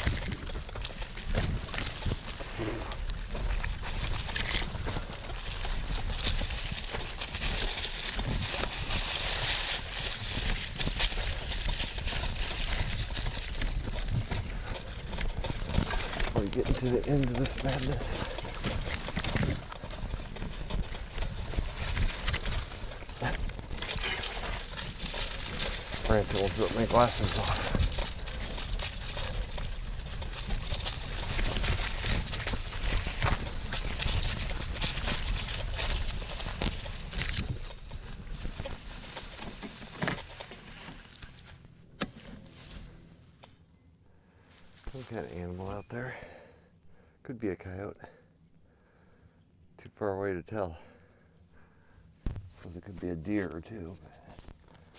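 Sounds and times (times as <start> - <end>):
steady rustling: 0.0 - 47.1
bicycle rattling over rough trail: 0.0 - 48.2, 50.7 - 54.9.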